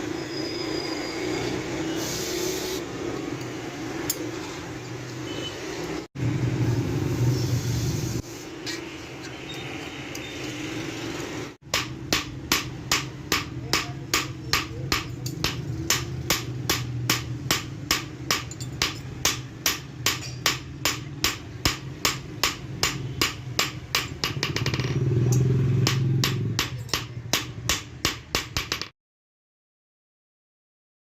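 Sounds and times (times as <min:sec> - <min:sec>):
hammer striking metal on anvil: 0:11.6 - 0:28.9.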